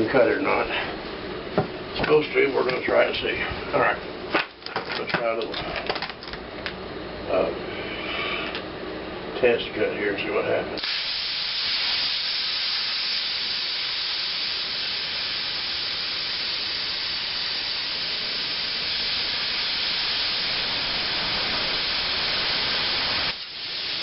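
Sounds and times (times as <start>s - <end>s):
plasma cutter torch hissing: 10.8s - 24.0s.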